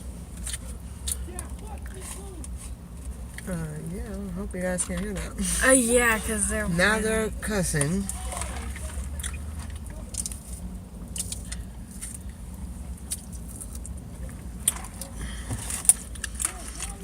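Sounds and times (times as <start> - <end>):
low rumble inside car: 0.0 - 17.0
chewing with lip-smacking: 8.1 - 17.0.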